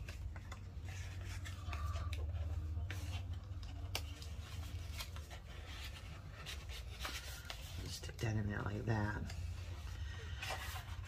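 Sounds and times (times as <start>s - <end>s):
paper rustling and crinkling: 0.0s - 11.0s.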